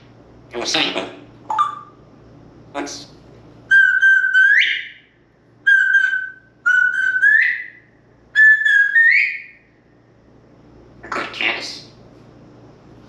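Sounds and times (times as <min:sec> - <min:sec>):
parrot whistling: 0:01.5 - 0:02.0, 0:03.7 - 0:09.7.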